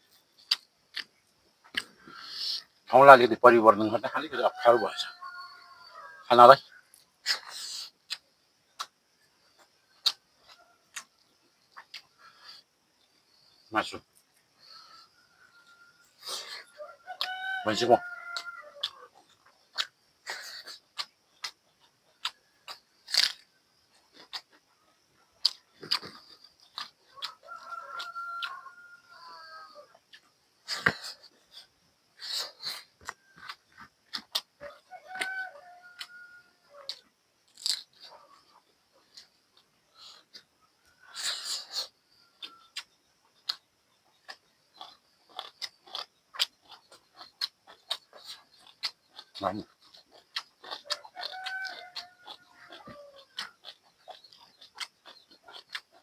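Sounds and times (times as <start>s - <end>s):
wet chewing and smacking: 0.3s - 2.2s, 6.9s - 12.7s, 18.3s - 28.7s, 29.9s - 36.1s, 36.7s - 56.0s
crunchy bite: 0.4s - 2.7s, 9.6s - 12.6s, 16.2s - 21.6s, 22.2s - 24.7s, 25.4s - 29.2s, 29.9s - 39.4s, 40.0s - 56.0s.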